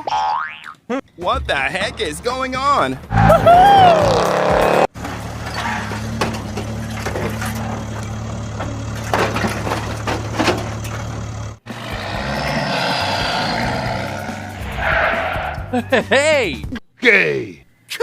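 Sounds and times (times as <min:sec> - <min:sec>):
clanks and knocks: 0:05.0 - 0:11.5.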